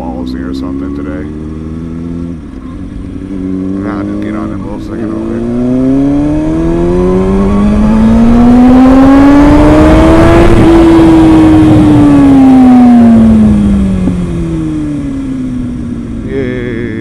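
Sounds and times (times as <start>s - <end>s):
motorcycle engine under full throttle: 0.0s - 17.0s
wind rush on microphone: 6.1s - 14.8s.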